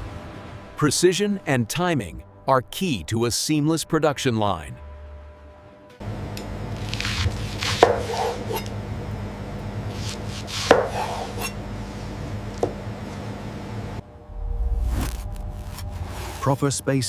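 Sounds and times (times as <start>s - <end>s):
machinery humming: 4.9s - 17.0s.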